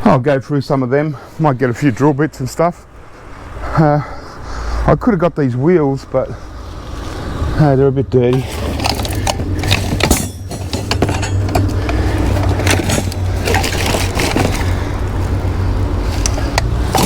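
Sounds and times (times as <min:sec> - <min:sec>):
metal tools clinking and clattering: 0:08.3 - 0:14.9, 0:16.1 - 0:17.0.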